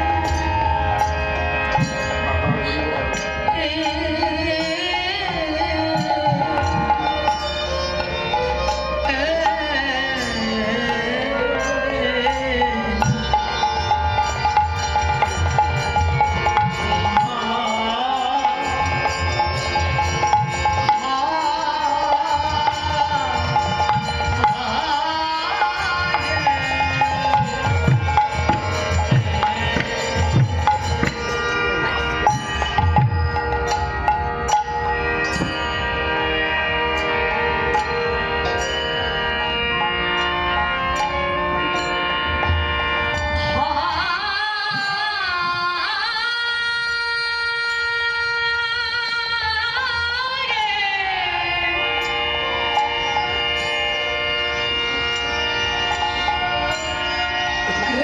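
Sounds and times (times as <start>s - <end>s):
sustained melody: 0.0s - 44.0s, 51.0s - 58.0s
person singing: 57.7s - 58.0s.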